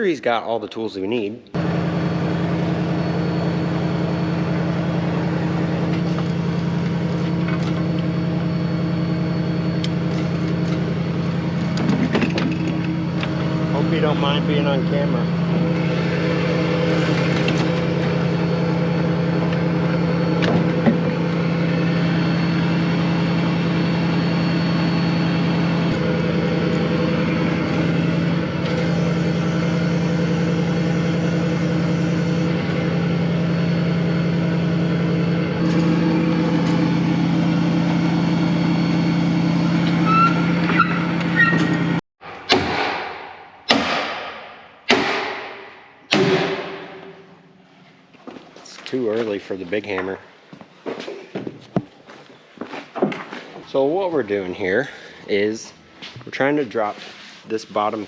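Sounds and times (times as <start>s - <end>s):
engine idling: 1.6s - 42.0s
hammer striking metal: 42.2s - 47.3s.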